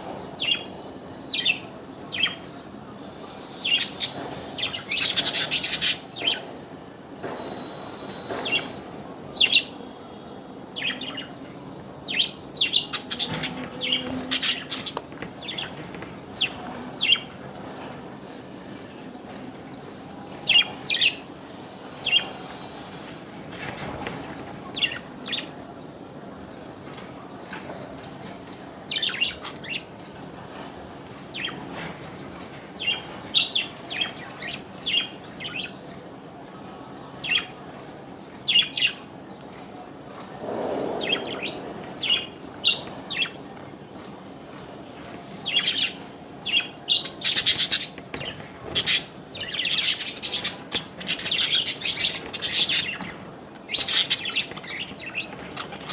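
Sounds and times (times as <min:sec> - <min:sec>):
small birds chirping: 0:00.0 - 0:40.2, 0:40.8 - 0:55.9
low rushing noise: 0:40.2 - 0:42.7.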